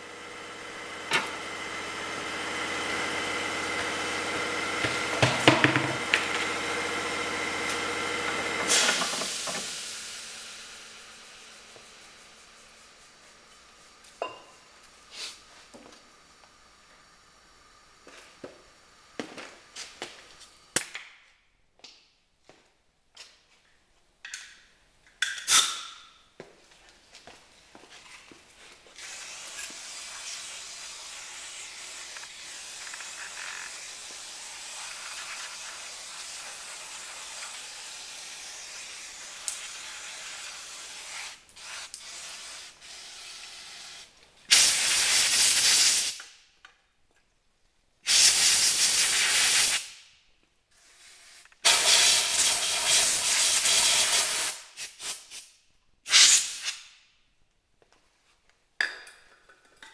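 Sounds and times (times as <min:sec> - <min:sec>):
pressurised spray bursts: 0:00.6 - 0:13.4, 0:29.0 - 0:46.2, 0:48.1 - 0:50.0, 0:50.8 - 0:55.5, 0:56.1 - 0:56.9
steady hiss: 0:08.7 - 0:15.6.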